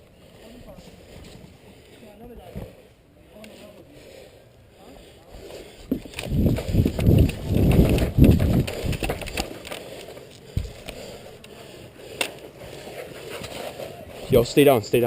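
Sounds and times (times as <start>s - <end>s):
thuds and rustling of gear: 5.9s - 9.5s.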